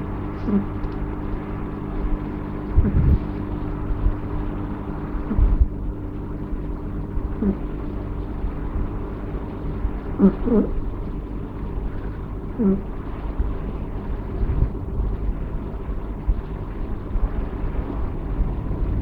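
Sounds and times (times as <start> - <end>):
kitten snoring: 0.4 - 0.7, 7.4 - 7.6, 10.2 - 10.7, 12.6 - 12.8.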